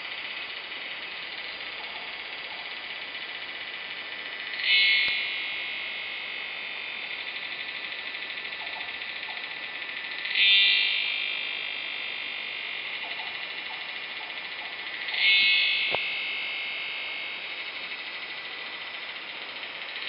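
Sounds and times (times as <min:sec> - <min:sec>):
metallic insect drone: 0:00.0 - 0:20.0.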